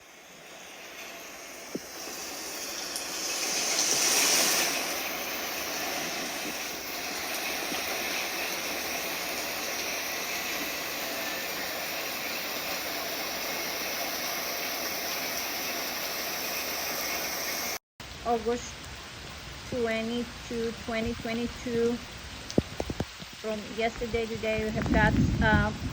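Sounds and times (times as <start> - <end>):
heavy rain falling: 0.0 - 19.5.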